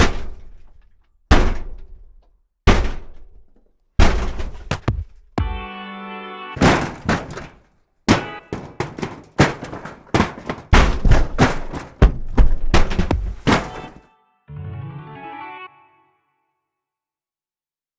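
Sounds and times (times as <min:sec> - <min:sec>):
heavy impact thuds: 0:00.0 - 0:05.7, 0:06.6 - 0:14.0.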